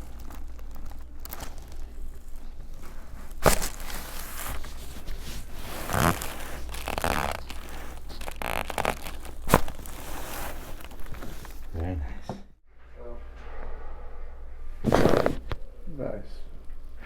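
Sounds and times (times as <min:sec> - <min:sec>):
clothing and table rustling: 0:00.0 - 0:12.5, 0:14.8 - 0:15.6.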